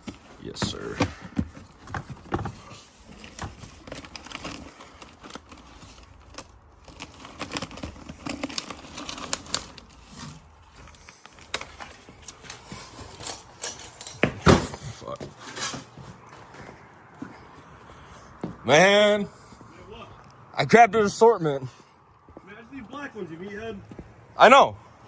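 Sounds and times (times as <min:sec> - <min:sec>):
crinkling and rustling: 0:00.0 - 0:18.6.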